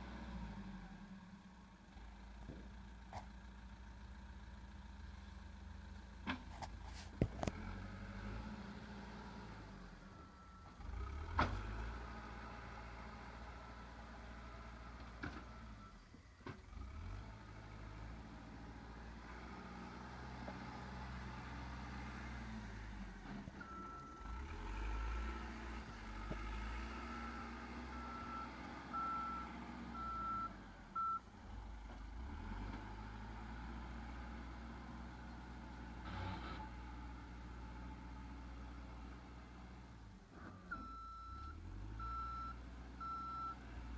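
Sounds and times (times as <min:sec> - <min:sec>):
reversing alarm beeps: 0:27.2 - 0:31.2, 0:40.8 - 0:43.6.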